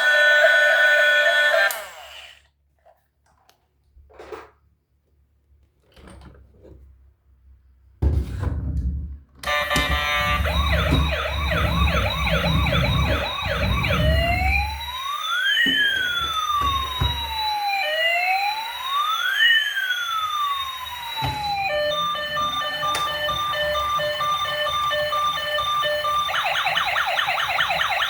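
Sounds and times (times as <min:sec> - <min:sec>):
toy siren warbling and wailing: 0:00.0 - 0:02.4, 0:09.5 - 0:28.0.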